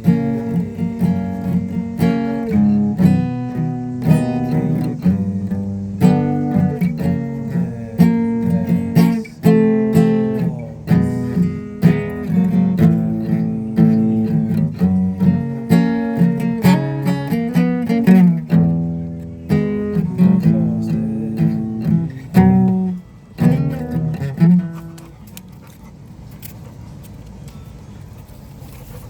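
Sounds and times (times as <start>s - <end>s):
acoustic guitar strumming chords: 0.0s - 25.5s.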